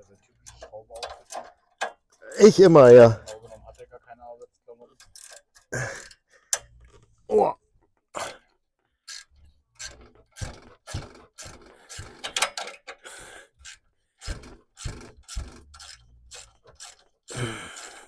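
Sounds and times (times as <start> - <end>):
hand ratchet clicking: 9.1 - 13.0, 13.6 - 18.0.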